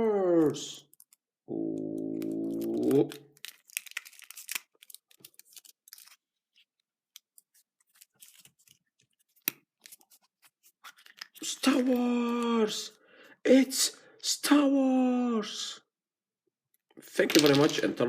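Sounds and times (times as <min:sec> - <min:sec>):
person saying ooh: 0:01.5 - 0:03.2
foil wrapper crinkling: 0:02.5 - 0:09.2.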